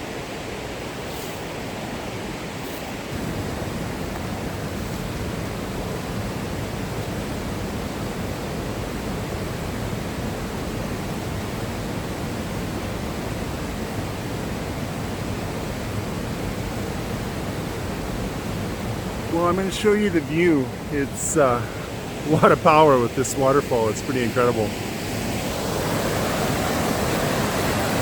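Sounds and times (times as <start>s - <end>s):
waterfall rushing: 14.9s - 28.0s.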